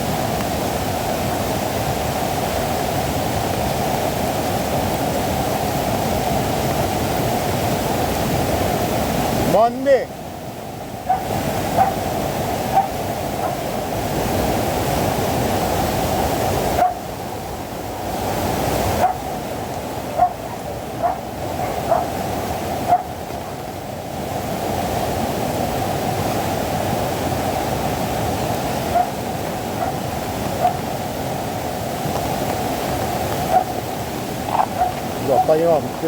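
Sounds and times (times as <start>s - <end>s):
floodwater rushing: 0.0s - 36.0s
dog barking: 11.0s - 12.0s, 12.7s - 13.8s, 16.8s - 17.0s, 19.0s - 19.3s, 20.1s - 22.2s, 22.8s - 23.6s, 28.9s - 30.9s, 33.4s - 33.8s, 34.5s - 35.7s.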